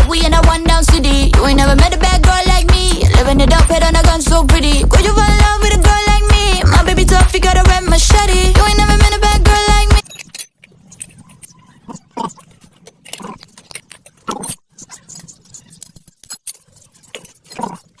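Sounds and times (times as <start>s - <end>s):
music: 0.0s - 10.0s
metal tools clinking: 10.0s - 11.7s.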